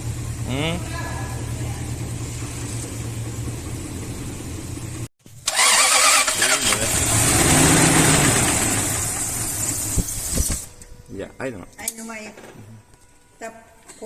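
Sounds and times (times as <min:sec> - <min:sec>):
car engine idling and revving: 0:00.0 - 0:10.9.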